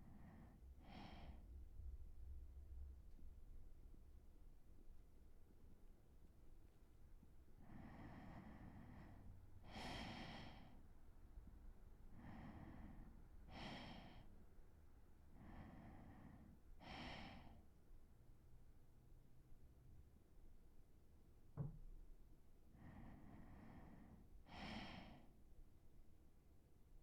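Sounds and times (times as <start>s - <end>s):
man breathing slowly: 0.0s - 2.0s, 6.8s - 18.1s, 22.6s - 25.6s.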